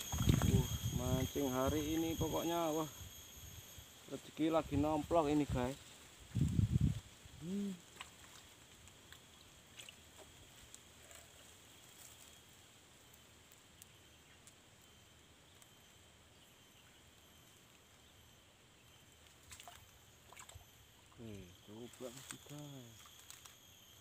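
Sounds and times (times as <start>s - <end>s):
steady high-pitched hum: 0.0s - 24.0s.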